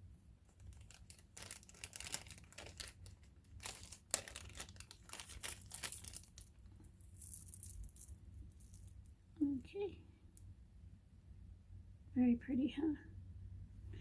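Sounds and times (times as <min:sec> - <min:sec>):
packaging crinkling: 0:00.4 - 0:09.1.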